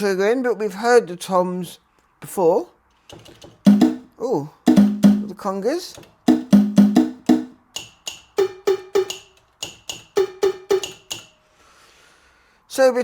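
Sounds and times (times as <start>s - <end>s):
drum machine conga hits: 3.6s - 5.4s, 6.2s - 11.3s.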